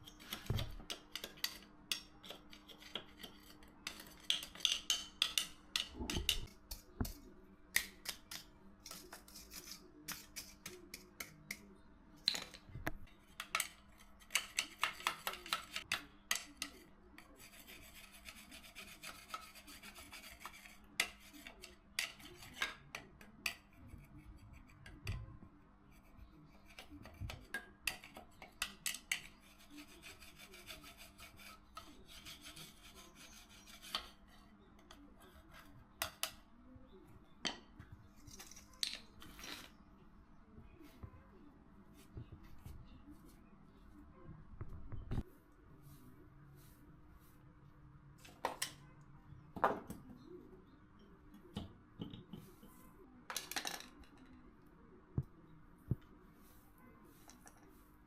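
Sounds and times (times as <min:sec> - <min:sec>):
hand tool scraping strokes: 0:29.2 - 0:34.4.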